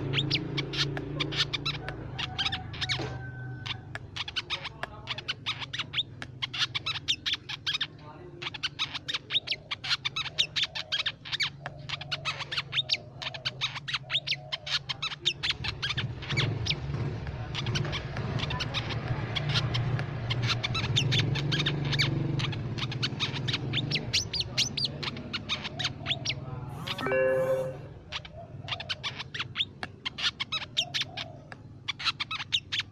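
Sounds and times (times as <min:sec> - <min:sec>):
bird chipping calls: 0:00.0 - 0:27.0.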